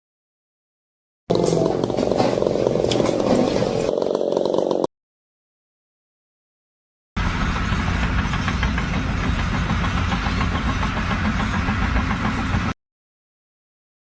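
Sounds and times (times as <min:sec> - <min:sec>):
engine running with pulsing hum: 0:07.2 - 0:12.7.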